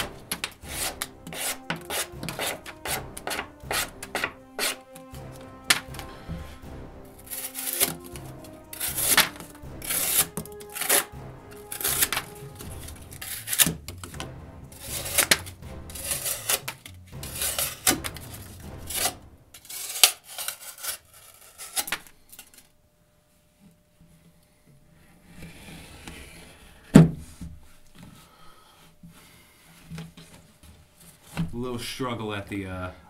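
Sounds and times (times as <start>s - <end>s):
background music: 0.0s - 20.2s, 31.5s - 33.0s
knife blade cutting material: 0.3s - 5.0s, 7.2s - 14.2s, 14.8s - 22.0s.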